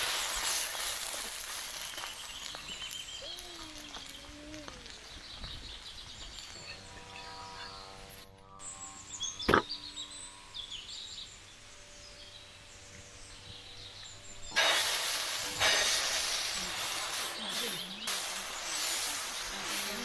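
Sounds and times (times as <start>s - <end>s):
oil sizzling on hot pan: 0.0s - 6.6s, 14.5s - 20.0s
birds chirping: 0.0s - 20.0s.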